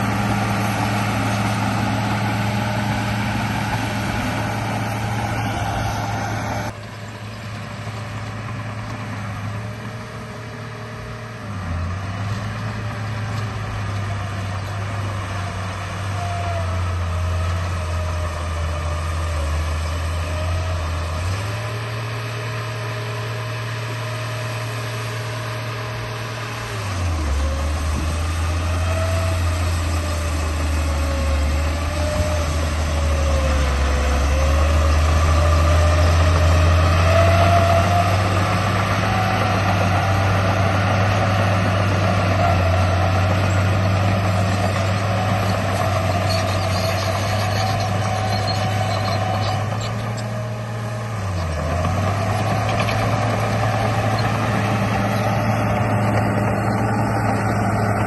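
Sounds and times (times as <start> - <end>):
toy bulldozer engine drone: 0.0 - 58.0.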